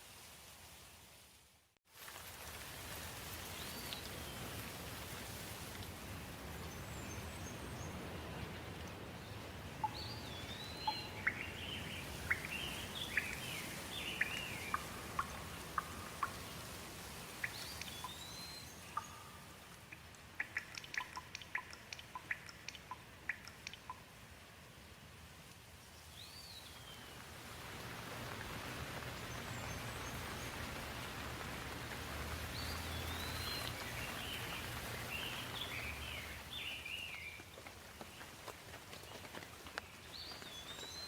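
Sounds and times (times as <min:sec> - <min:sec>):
steady rain: 0:00.0 - 0:41.0
songbirds chirping: 0:06.4 - 0:41.0
sharp drip-like clicks: 0:08.8 - 0:09.0, 0:09.8 - 0:24.2, 0:31.8 - 0:41.0.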